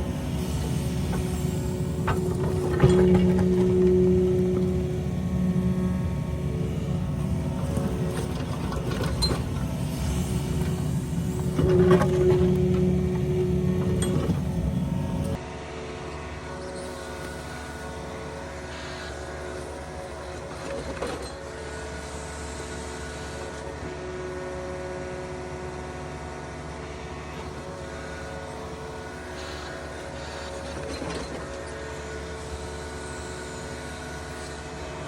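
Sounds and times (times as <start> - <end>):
steady whine: 0.0 - 21.1
excavator diesel engine running: 0.0 - 24.0.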